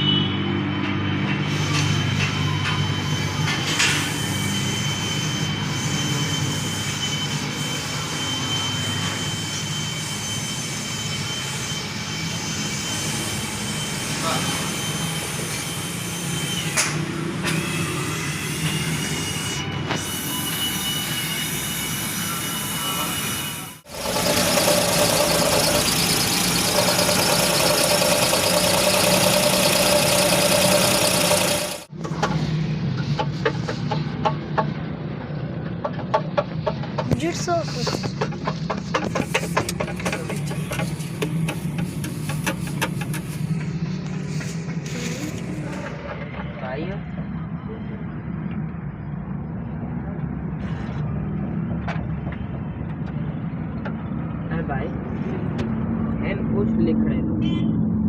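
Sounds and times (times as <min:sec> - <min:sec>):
high-pitched engine whine: 0:00.0 - 0:33.1
engine whine and fine rattle: 0:00.8 - 0:20.0, 0:23.7 - 0:58.0
car engine running: 0:23.9 - 0:31.9
engine knock: 0:23.9 - 0:31.9.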